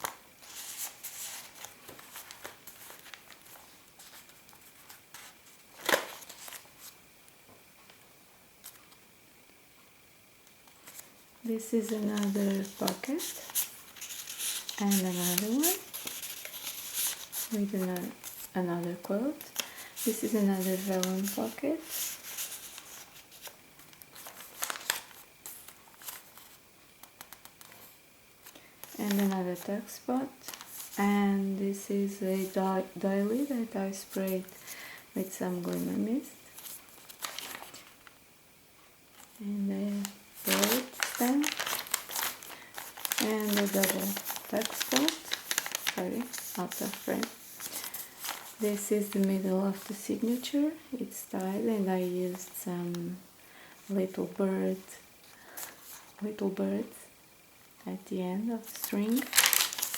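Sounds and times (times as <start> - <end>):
paper rustling and crinkling: 0.0 - 7.0, 10.6 - 18.6, 19.3 - 29.7, 30.4 - 31.0, 33.3 - 38.1, 39.2 - 50.6, 58.6 - 59.9.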